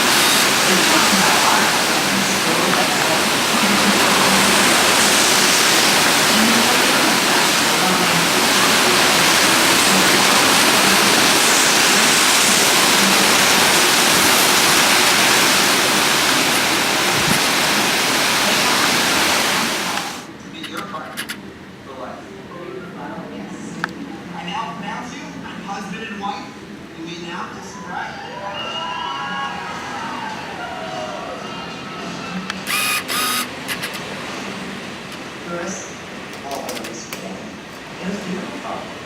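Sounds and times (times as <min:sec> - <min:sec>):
heavy rain: 0:00.0 - 0:20.4, 0:32.6 - 0:39.0.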